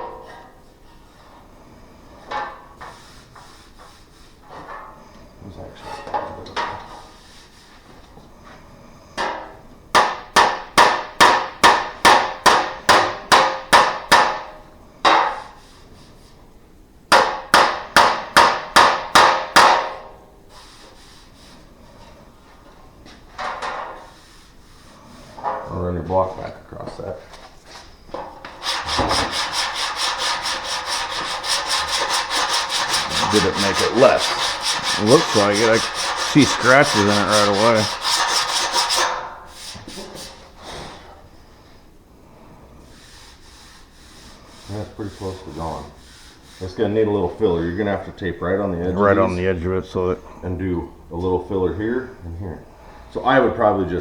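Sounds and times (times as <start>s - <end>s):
hammer tapping sheet metal: 10.0s - 14.5s, 17.1s - 20.1s, 28.6s - 39.3s
sanding block rubbing metal panel: 28.5s - 40.4s, 42.9s - 46.9s.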